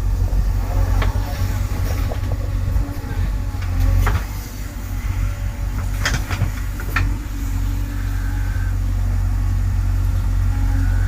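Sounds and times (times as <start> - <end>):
diesel engine running: 0.0 - 11.0
metal knocks: 5.7 - 7.2.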